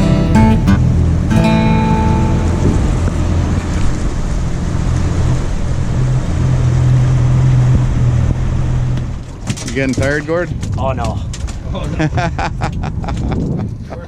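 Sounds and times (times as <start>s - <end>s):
boat motor running: 0.0s - 9.3s
water noise: 0.0s - 9.4s
wind: 0.0s - 14.0s.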